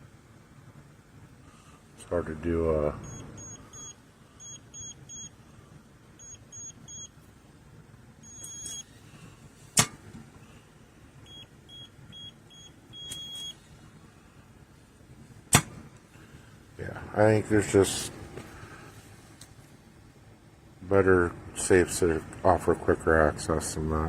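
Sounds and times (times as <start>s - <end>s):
short high keypad beeps: 3.0s - 5.3s, 8.3s - 8.9s, 11.3s - 13.6s
longer single beeps: 3.0s - 5.4s, 6.2s - 7.2s, 8.2s - 8.9s, 11.2s - 13.6s.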